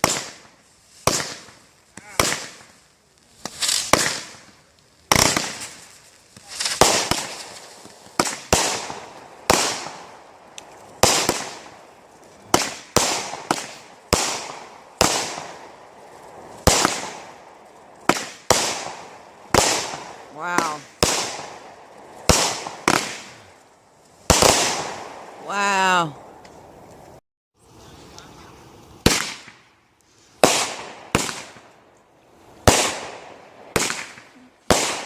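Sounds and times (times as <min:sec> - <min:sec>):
fireworks bangs: 0:00.0 - 0:35.0.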